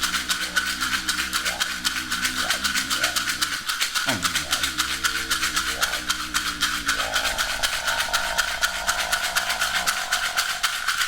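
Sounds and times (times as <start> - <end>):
hand rattle shaking: 0.0 - 11.0
person toning: 4.1 - 5.0.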